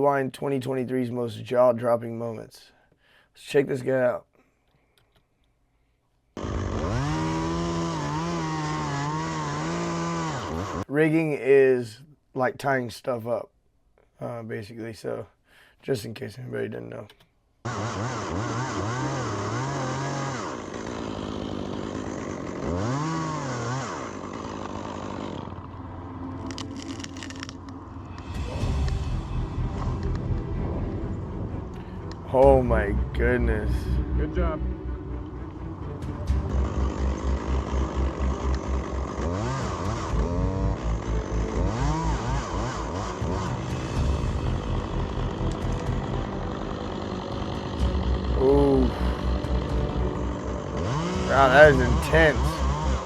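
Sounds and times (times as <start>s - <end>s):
chainsaw revving: 6.4s - 10.9s, 17.6s - 30.4s, 33.9s - 53.0s
low pulsing rumble: 25.6s - 53.0s.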